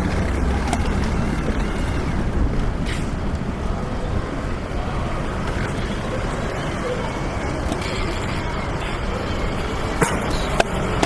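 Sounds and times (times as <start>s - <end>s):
passing traffic rumble: 0.0s - 11.0s.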